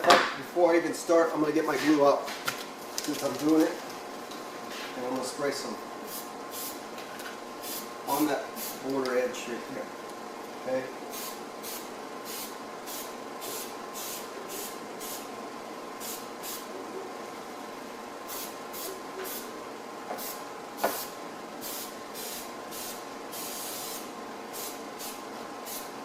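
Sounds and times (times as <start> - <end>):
aerosol can spraying: 8.6 - 8.8, 11.1 - 15.2, 20.2 - 25.9.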